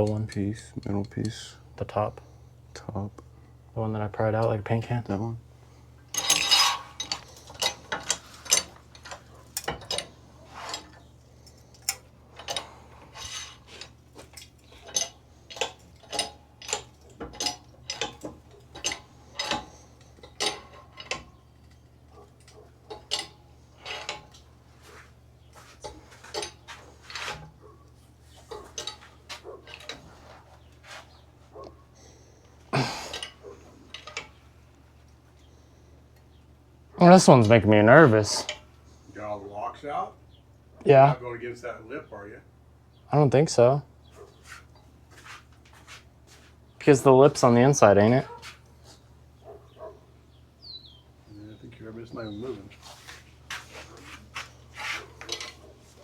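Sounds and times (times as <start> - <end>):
metal tools clinking and clanking: 6.0 - 27.7, 28.3 - 31.2, 32.0 - 34.4, 52.2 - 56.0.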